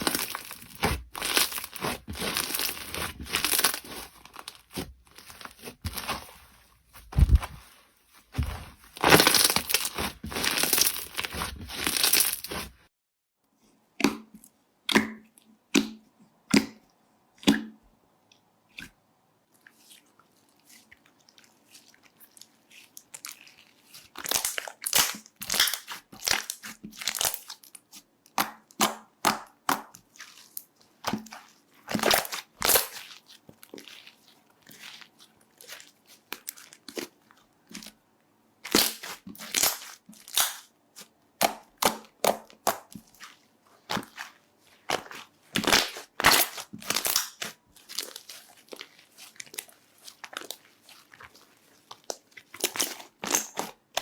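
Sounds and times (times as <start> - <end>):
crunchy slime crackling pops: 0.0 - 6.2, 8.3 - 12.7, 24.3 - 27.6, 31.9 - 33.1, 38.6 - 43.2, 44.9 - 48.6.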